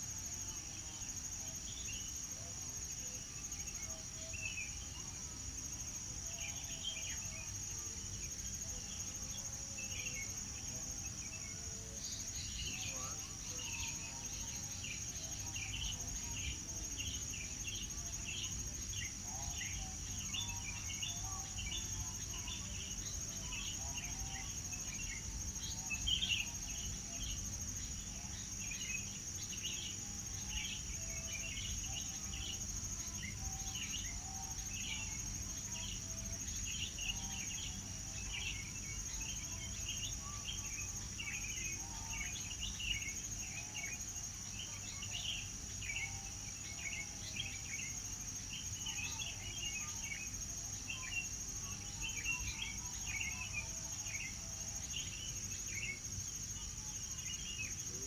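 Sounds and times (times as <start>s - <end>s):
high insect trill: 0.0s - 58.0s.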